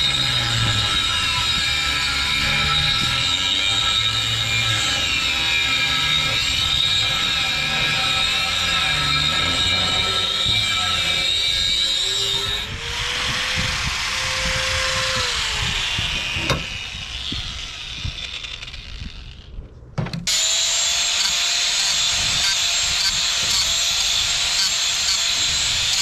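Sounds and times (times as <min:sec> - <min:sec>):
high-pitched machine whine: 0:00.0 - 0:19.5
power tool grinding: 0:00.0 - 0:26.0.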